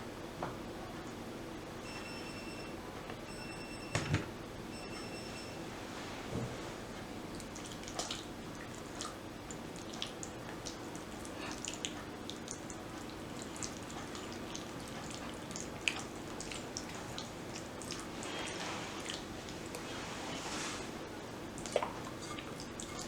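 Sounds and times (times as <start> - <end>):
wet food clicks: 9.0 - 18.1.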